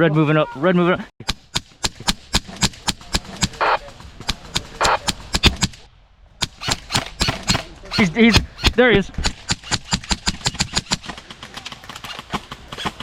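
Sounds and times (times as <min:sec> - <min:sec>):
airsoft gun rapid shots: 0:06.4 - 0:13.0.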